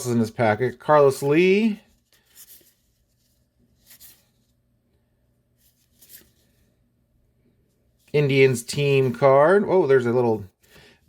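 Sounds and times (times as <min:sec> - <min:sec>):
trading cards rustling: 0:00.9 - 0:04.5, 0:05.6 - 0:06.7.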